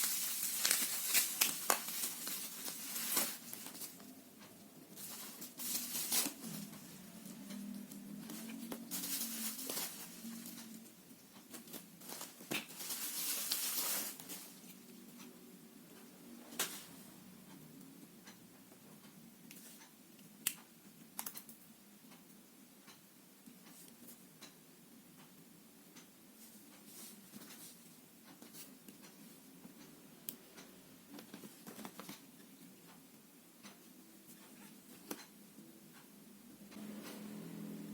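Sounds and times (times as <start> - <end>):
packaging rustling with clicks: 0.0 - 4.2, 4.9 - 10.9, 11.5 - 14.6, 31.2 - 32.2.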